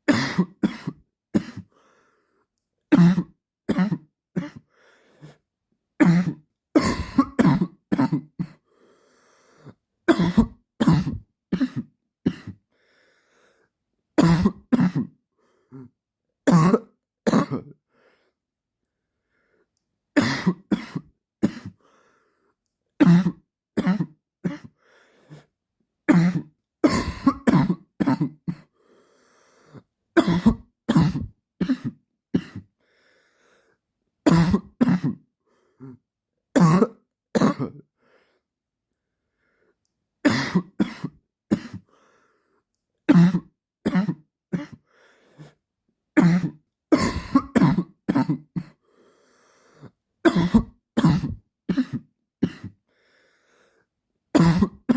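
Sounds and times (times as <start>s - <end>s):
man coughing: 0.1s - 1.7s, 6.0s - 8.6s, 10.1s - 12.6s, 16.5s - 17.8s, 26.1s - 28.7s, 30.2s - 32.7s, 34.3s - 35.2s, 36.6s - 37.8s, 46.2s - 48.8s, 50.3s - 52.8s, 54.4s - 54.9s.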